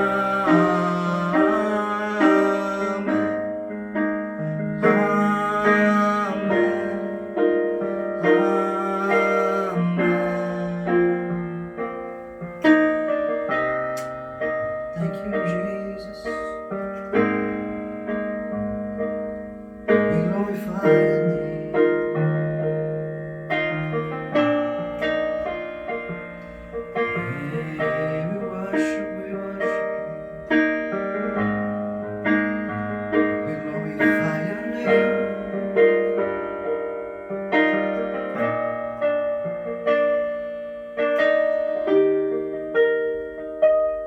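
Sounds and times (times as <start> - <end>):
piano playing slow chords: 0.0 - 44.0.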